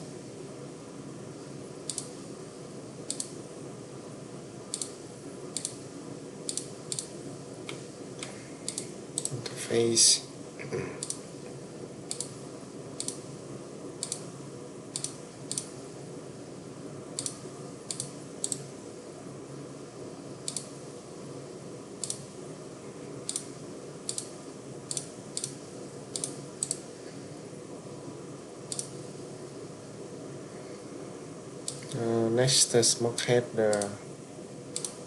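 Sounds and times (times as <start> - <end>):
low background hum: 0.0 - 35.0
mouse and keyboard clicks: 1.9 - 2.2, 3.1 - 3.4, 4.7 - 5.0, 12.1 - 12.3, 13.0 - 13.2, 14.0 - 14.2, 15.0 - 15.7, 17.2 - 18.6, 20.5 - 20.7, 23.3 - 23.5, 24.9 - 26.8, 28.7 - 29.0, 34.8 - 35.0.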